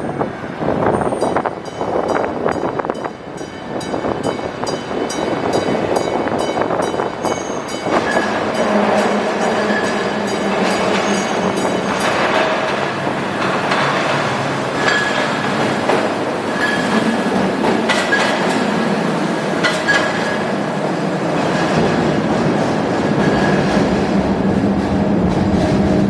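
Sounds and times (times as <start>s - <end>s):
train wheels rumbling on rail: 0.0s - 26.0s
high wheel squeals: 7.2s - 12.1s, 16.6s - 17.0s
clicks from rail joints: 11.9s - 18.7s.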